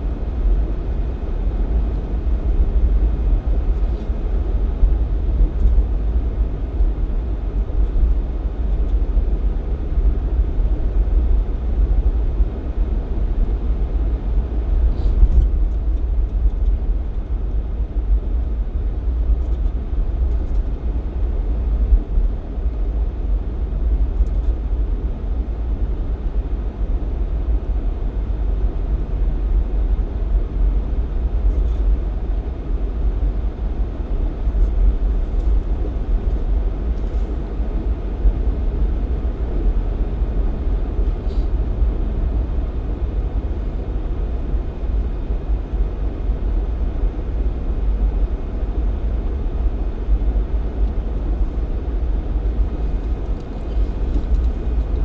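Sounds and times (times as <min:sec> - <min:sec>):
car engine and road rumble: 0:00.0 - 0:55.0.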